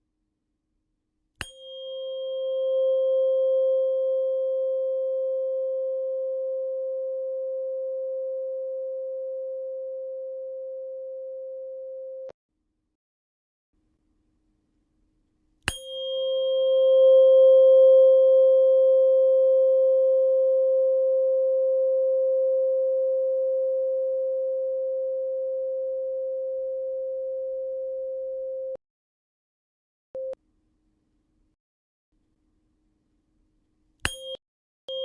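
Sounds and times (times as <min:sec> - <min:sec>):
tuning fork ringing: 0:01.4 - 0:12.3, 0:15.7 - 0:28.8, 0:34.1 - 0:35.0.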